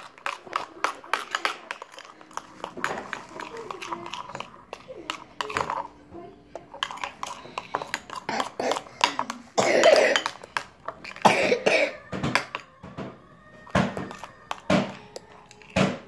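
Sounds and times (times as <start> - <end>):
person coughing: 8.3 - 10.4, 11.1 - 12.1.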